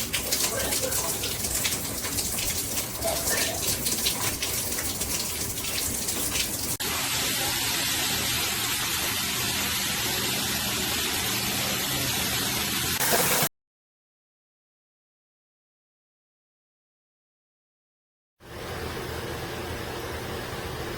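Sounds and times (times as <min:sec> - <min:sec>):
shower head spraying water: 0:00.0 - 0:13.5.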